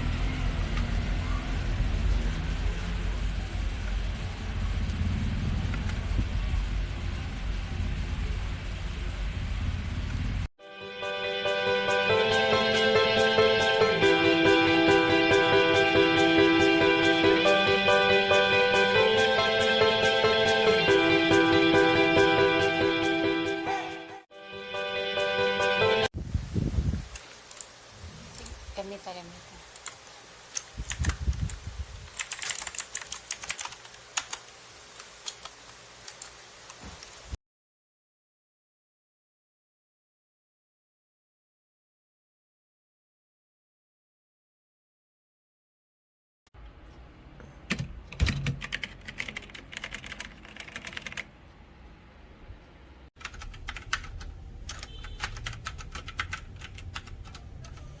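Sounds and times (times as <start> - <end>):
mechanical keyboard key clacks: 32.1 - 34.4, 53.2 - 57.9.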